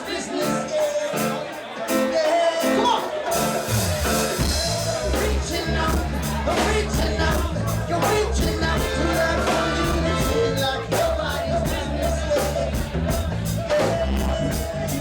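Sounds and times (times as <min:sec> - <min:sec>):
live reggae band playing: 0:00.0 - 0:15.0
person singing: 0:00.0 - 0:15.0
bass line: 0:03.3 - 0:15.0.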